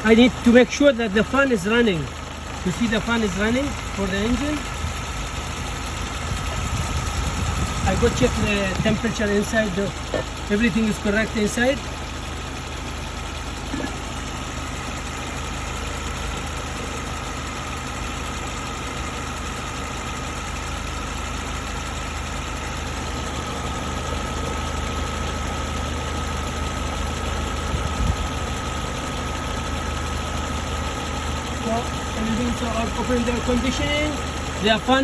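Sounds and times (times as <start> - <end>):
cooling fan whine: 0.0 - 16.6, 27.4 - 28.6, 29.7 - 35.0
car engine idling: 0.0 - 35.0.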